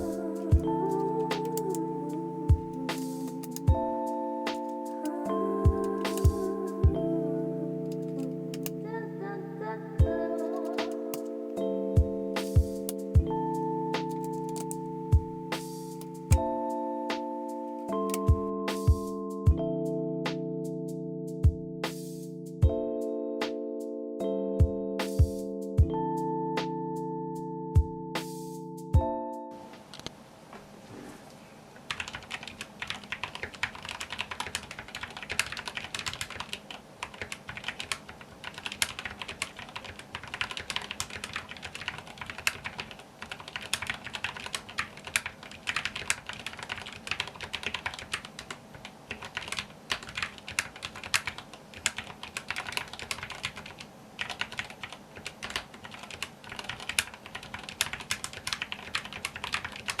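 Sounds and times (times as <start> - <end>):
mechanical keyboard typing: 0.0 - 3.8, 4.5 - 7.0, 7.8 - 8.8, 10.0 - 11.5, 12.4 - 13.2, 14.0 - 14.8, 15.6 - 16.5, 17.9 - 19.0, 31.9 - 60.0.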